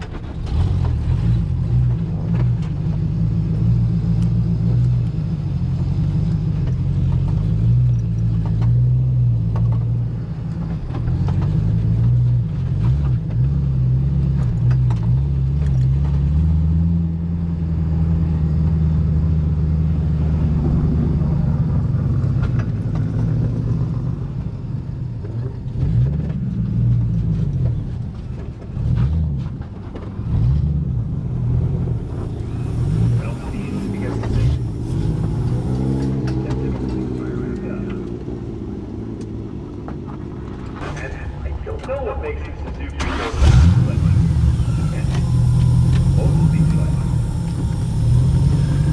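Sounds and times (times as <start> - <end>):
vehicle engine droning: 0.0 - 48.9.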